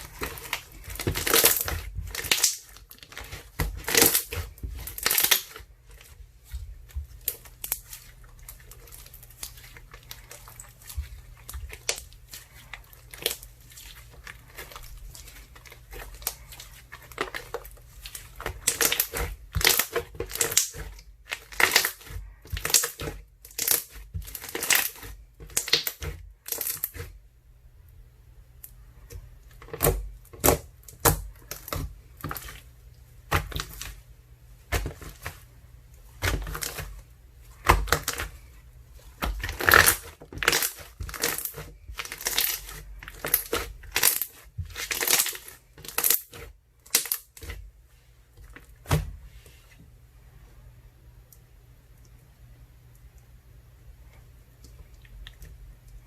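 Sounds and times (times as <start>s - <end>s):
slime crackling and popping: 0.0s - 27.1s, 39.2s - 47.6s
hands squishing slime: 0.0s - 27.2s, 28.6s - 47.7s.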